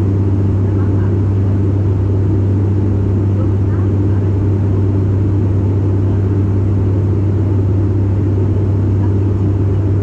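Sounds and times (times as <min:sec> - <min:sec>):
propeller hum: 0:00.0 - 0:10.0
rumbling engine and airflow rush: 0:00.0 - 0:10.0.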